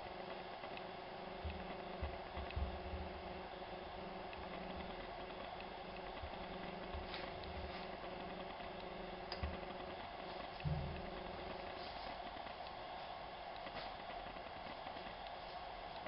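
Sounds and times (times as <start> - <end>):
steady low hum: 0.0 - 16.0
faint clicks and taps: 0.6 - 3.1, 8.6 - 9.8.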